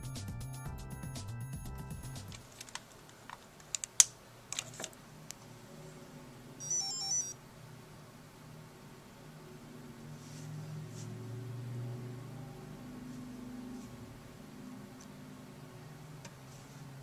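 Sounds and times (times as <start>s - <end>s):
electronic tones: 6.6s - 7.4s.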